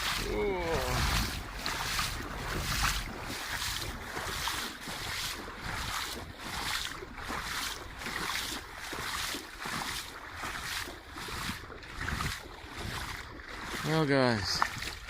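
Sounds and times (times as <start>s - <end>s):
wind buffeting microphone: 0.0s - 8.2s, 11.2s - 13.8s
footsteps in soft sand: 0.0s - 15.0s.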